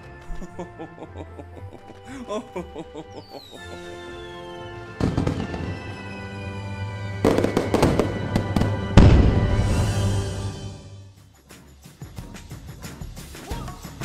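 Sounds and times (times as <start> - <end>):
music: 0.0 - 14.0
fireworks crackling: 3.6 - 10.5
fireworks bangs: 5.0 - 6.2, 7.2 - 10.1.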